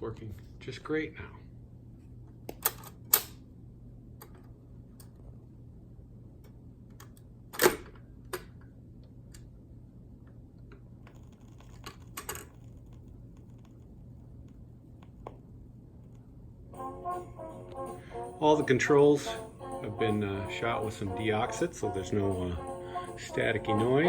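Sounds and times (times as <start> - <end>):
steady low hum: 8.8 - 24.0.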